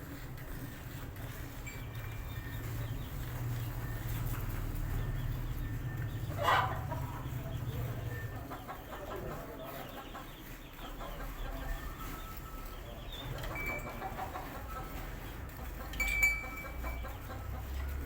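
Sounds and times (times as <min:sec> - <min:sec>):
chickens clucking: 0:00.0 - 0:18.0
chicken squawk: 0:06.3 - 0:07.2.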